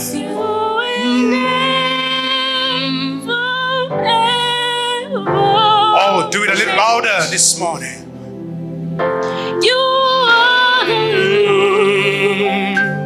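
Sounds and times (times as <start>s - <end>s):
worship song singing: 0.0s - 13.0s.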